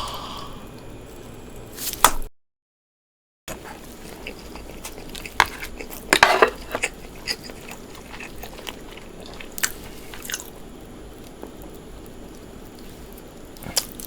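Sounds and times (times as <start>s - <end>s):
loud crunchy bite: 3.5s - 10.6s, 13.6s - 14.0s
person chewing food: 3.5s - 14.0s.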